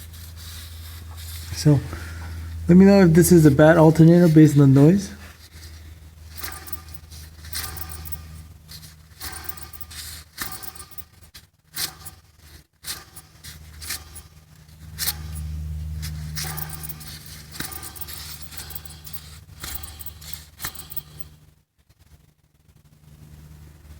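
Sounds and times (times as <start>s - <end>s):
low steady hum: 0.0s - 12.3s, 12.9s - 21.5s
metallic scraping and clicking: 6.3s - 12.2s, 12.9s - 14.3s, 15.0s - 21.3s.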